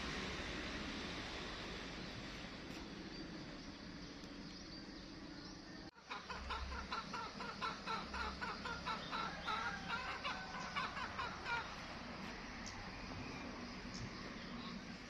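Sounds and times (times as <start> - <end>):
low hum and noise: 0.0 - 5.9
repeated short bird calls: 2.1 - 15.0.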